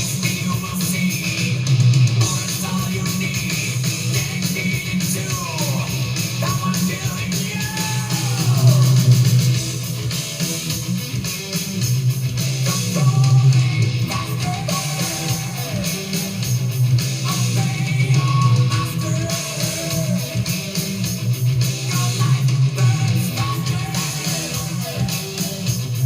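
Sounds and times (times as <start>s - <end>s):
heavy metal music: 0.0s - 26.0s
lead guitar bending notes: 7.9s - 11.2s.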